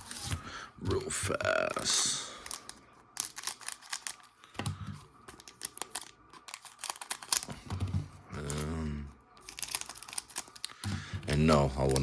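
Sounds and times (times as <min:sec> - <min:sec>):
plastic wrapper crinkling: 0:01.5 - 0:04.5, 0:05.1 - 0:07.7, 0:09.4 - 0:12.0.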